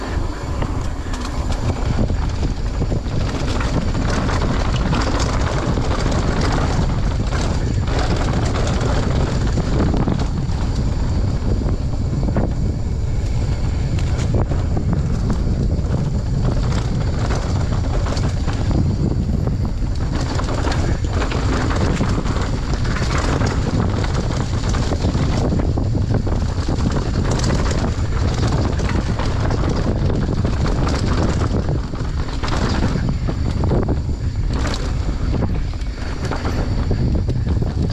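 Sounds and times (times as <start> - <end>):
motorcycle engine running: 0.0 - 37.9
wind rumble on microphone: 0.0 - 37.9.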